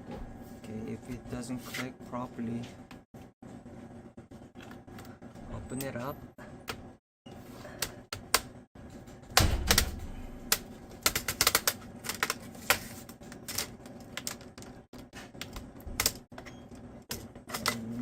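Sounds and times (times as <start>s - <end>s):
heavier knock: 9.4s - 10.6s.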